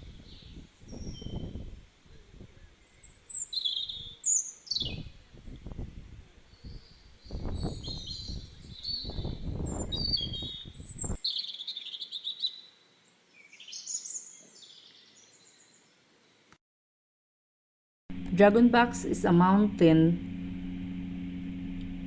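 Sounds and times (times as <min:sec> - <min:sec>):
small birds singing and chirping: 0:00.0 - 0:16.4
low rumbling noise: 0:18.1 - 0:22.0.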